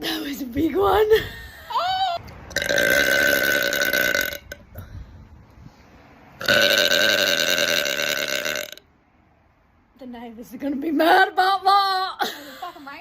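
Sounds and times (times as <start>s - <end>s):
woman burping loudly: 2.5s - 4.7s, 6.4s - 8.8s.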